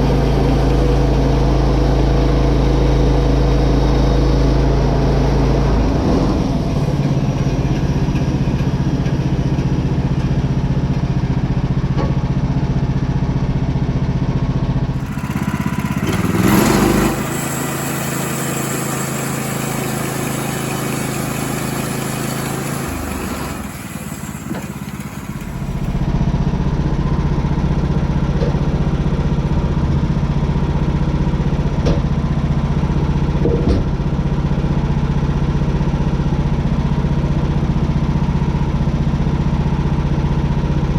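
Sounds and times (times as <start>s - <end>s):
gas engine humming: 14.9s - 26.2s.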